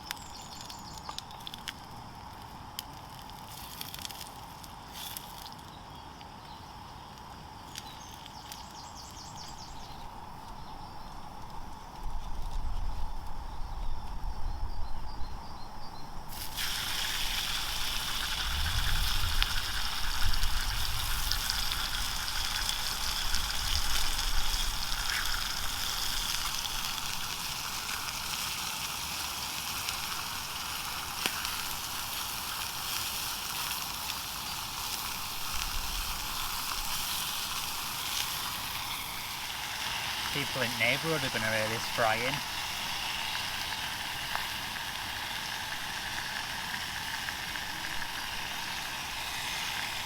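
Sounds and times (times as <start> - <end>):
meat sizzling in a frying pan: 3.0 - 5.5, 16.3 - 50.0.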